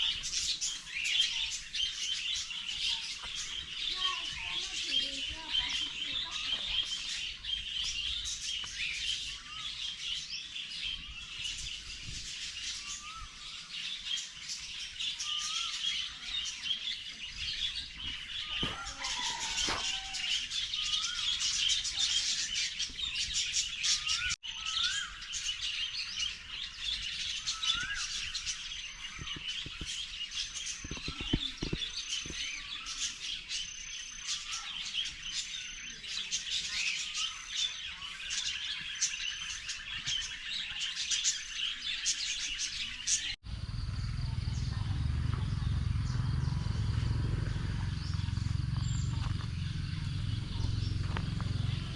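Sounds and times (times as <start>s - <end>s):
chorus of high bird chirps: 0.0s - 51.9s
short rising bird call: 18.4s - 21.3s.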